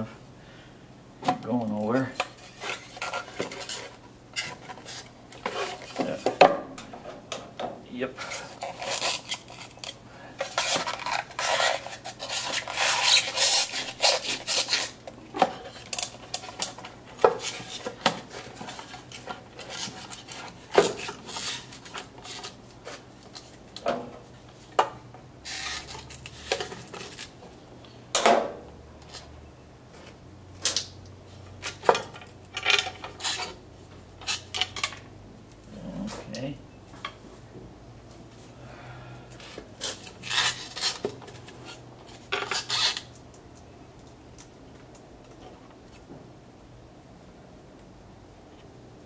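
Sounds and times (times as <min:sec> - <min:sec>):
faint steady hum: 0:00.0 - 0:49.0
scraping metal parts: 0:31.6 - 0:33.6.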